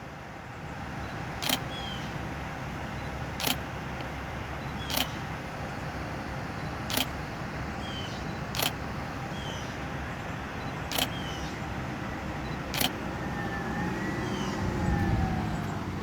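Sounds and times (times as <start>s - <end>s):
passing road traffic hum: 0.0s - 16.0s
camera shutter clicks: 1.4s - 1.8s, 3.4s - 3.7s, 4.8s - 5.2s, 6.9s - 7.2s, 8.5s - 8.8s, 10.9s - 11.3s, 12.7s - 13.0s
faint siren wail: 11.6s - 16.0s.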